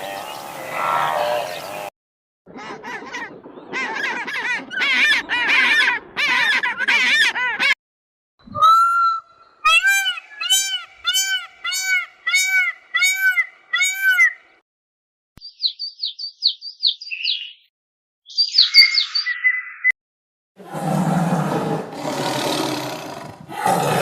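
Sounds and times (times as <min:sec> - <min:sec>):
animal calls rising and falling: 0:20.6 - 0:24.0.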